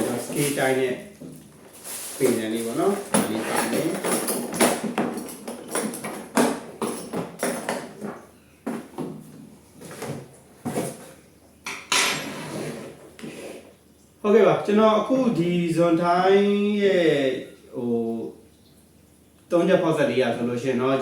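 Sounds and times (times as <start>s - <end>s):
scrape: 1.8s - 2.4s, 12.1s - 13.7s
tool parts clicking and clinking: 2.9s - 8.0s.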